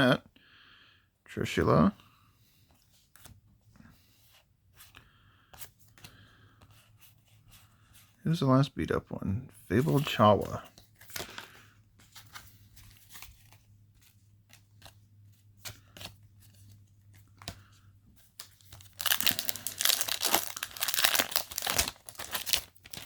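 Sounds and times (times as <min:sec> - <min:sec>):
foil wrapper tearing and crinkling: 0:18.5 - 0:23.0.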